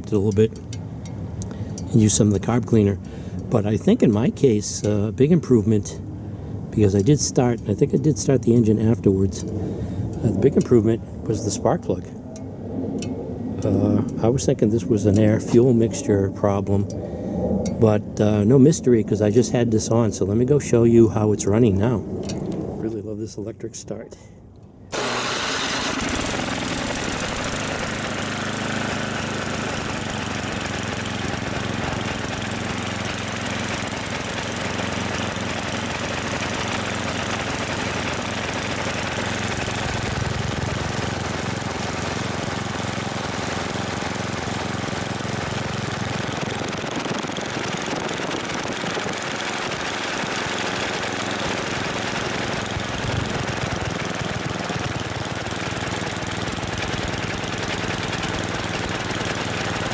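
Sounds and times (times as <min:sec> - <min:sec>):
snowblower engine running: 0:24.9 - 0:59.9.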